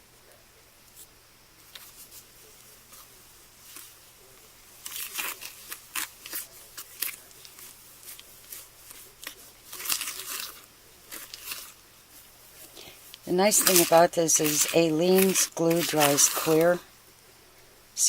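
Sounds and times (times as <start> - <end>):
gritty scraping of wet sand mixture: 4.8 - 11.8, 12.5 - 16.8.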